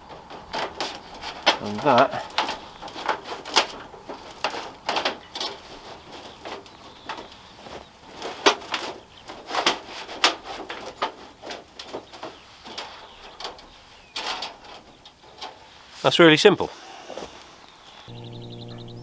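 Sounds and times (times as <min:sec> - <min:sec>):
metal parts clicking and knocking: 0:00.0 - 0:15.5.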